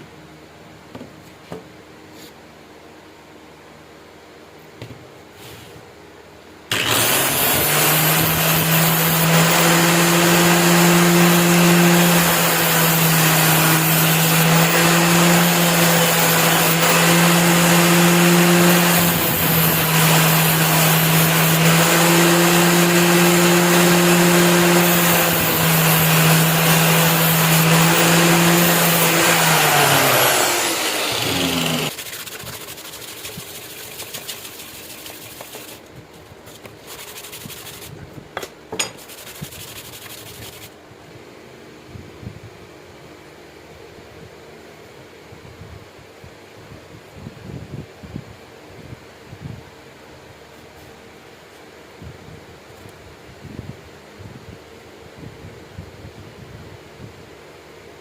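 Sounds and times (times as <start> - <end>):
motor spinning down: 6.7 - 35.8
power tool grinding metal: 6.7 - 35.8, 36.5 - 40.7
faint rubbing: 31.9 - 38.0, 38.8 - 40.7.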